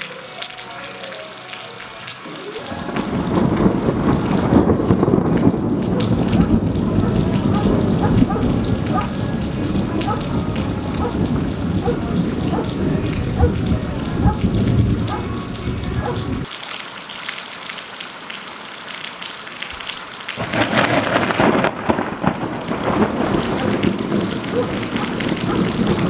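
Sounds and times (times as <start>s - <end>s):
rain falling: 0.0s - 26.0s
thunder rumbling: 2.2s - 16.5s, 20.4s - 26.0s.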